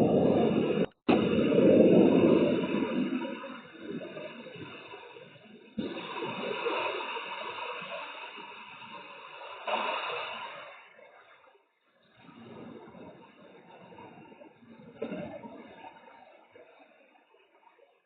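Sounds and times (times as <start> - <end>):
heavy rain hissing: 0.0 - 11.3.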